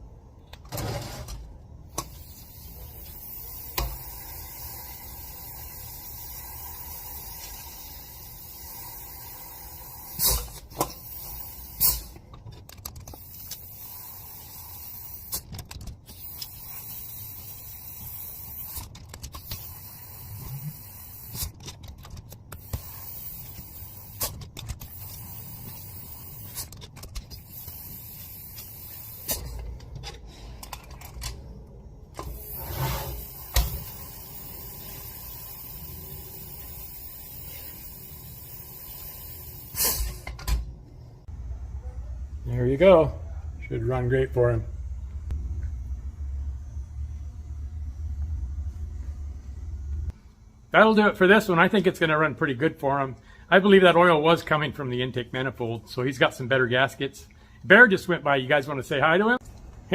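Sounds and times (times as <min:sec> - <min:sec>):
steady hiss: 0:13.1 - 0:15.4, 0:16.1 - 0:18.8, 0:19.4 - 0:21.5, 0:22.6 - 0:26.7, 0:27.3 - 0:29.6, 0:32.2 - 0:40.2.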